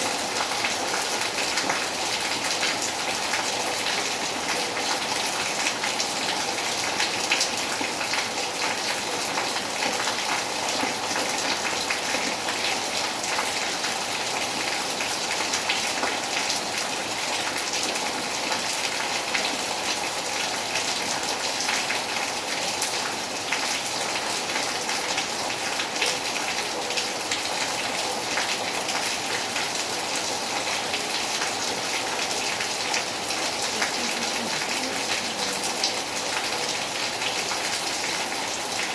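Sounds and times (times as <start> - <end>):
rain falling: 0.0 - 38.9.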